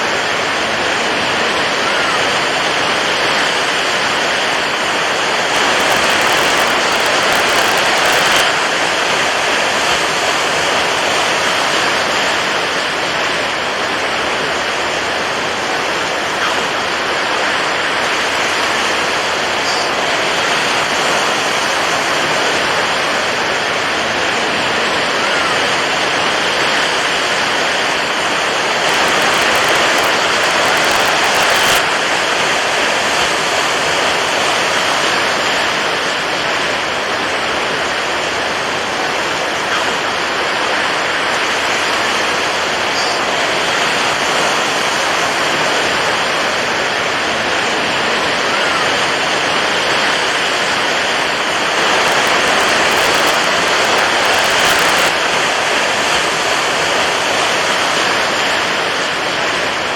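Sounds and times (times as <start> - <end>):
water waves rushing: 0.0 - 59.9.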